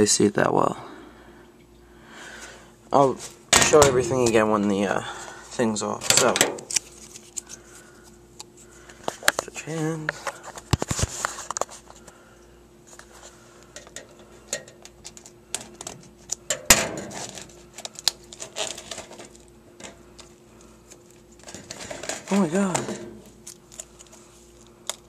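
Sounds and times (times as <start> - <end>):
fingers scratching plastic wrap: 17.2 - 19.4.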